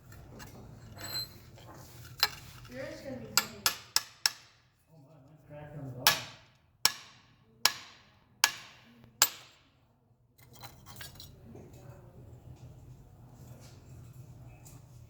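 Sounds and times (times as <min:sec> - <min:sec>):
light clinking and scraping: 0:00.0 - 0:03.7, 0:10.4 - 0:15.0
hammer blows ringing on mold: 0:06.1 - 0:09.6.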